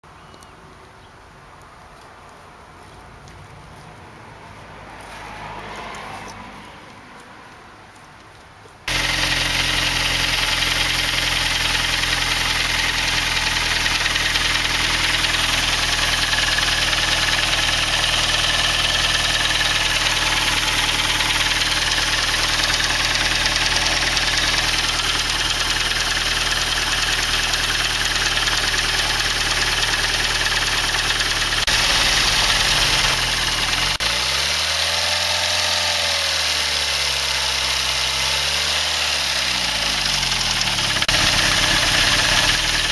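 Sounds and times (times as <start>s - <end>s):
car engine idling: 8.9s - 42.9s.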